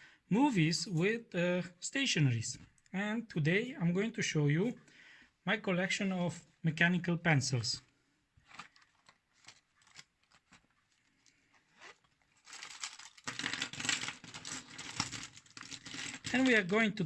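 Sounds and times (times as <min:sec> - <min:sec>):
rustling and crinkling: 0:08.4 - 0:17.0.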